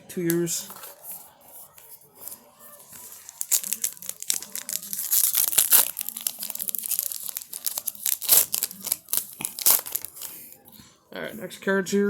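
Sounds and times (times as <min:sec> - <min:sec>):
wrapper crinkling and tearing: 0:02.2 - 0:10.6.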